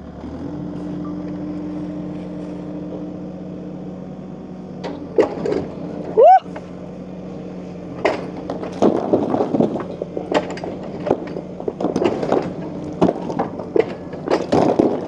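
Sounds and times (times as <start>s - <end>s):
machine engine hum: 0.0s - 15.0s
falling debris crashing: 8.0s - 15.0s
wood cracking and splintering: 8.0s - 15.0s.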